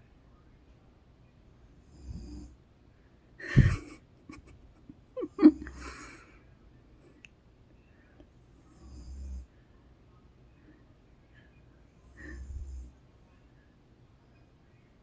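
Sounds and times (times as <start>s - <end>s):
woman snoring softly: 1.8s - 2.6s, 8.6s - 9.5s, 12.0s - 13.0s.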